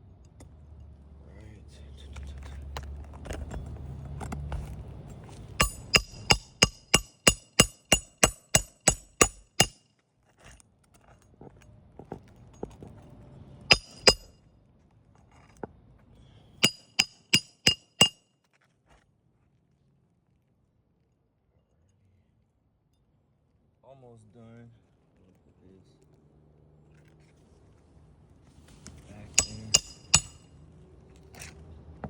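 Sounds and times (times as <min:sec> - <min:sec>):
hammer striking nails: 0:05.6 - 0:09.8, 0:13.7 - 0:14.3, 0:16.6 - 0:18.2, 0:29.4 - 0:30.4.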